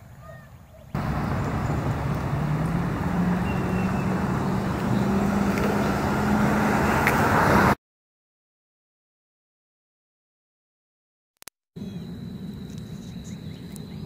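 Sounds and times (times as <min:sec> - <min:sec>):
vehicle engine hum: 0:00.9 - 0:07.8, 0:11.8 - 0:14.0
constant rushing noise: 0:01.0 - 0:06.4.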